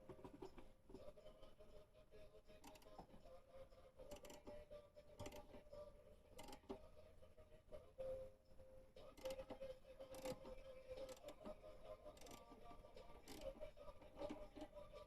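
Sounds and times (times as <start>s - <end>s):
wrench clicking and creaking: 2.6s - 3.2s, 4.1s - 4.6s, 5.2s - 5.6s, 6.4s - 6.8s, 9.2s - 14.8s.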